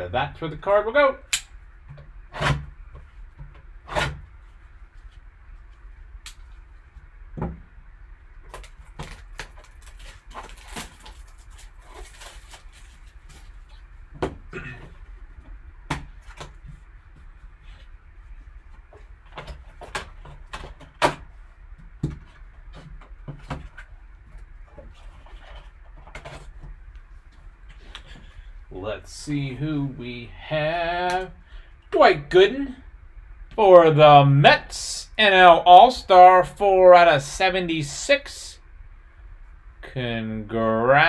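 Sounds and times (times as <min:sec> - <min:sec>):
packaging rustling: 0:08.5 - 0:14.0.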